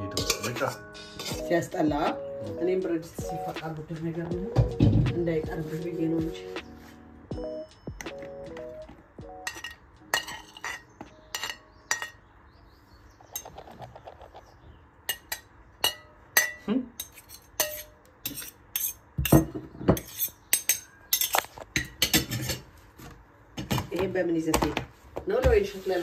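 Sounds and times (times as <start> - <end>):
cutlery and dishes clinking: 0.1 - 1.5, 9.4 - 12.2, 15.1 - 22.7.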